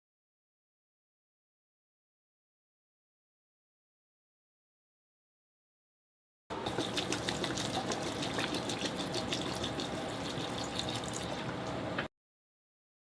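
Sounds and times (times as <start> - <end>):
water pouring into container: 6.6 - 11.6.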